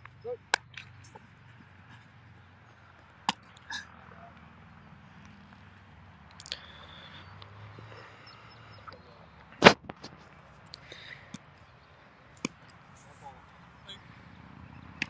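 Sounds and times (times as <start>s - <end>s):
football smack: 9.6s - 10.2s.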